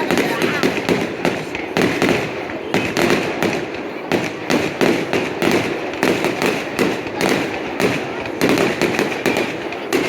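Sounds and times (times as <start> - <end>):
fireworks bangs and crackles: 0.0 - 10.0.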